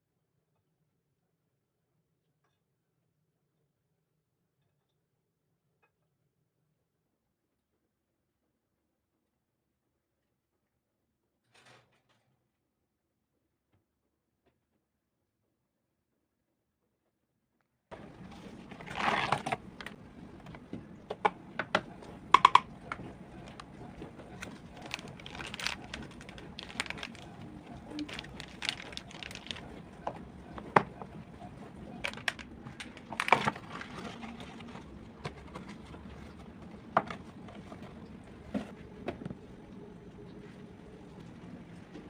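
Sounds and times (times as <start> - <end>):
faint background hum: 17.9 - 42.0.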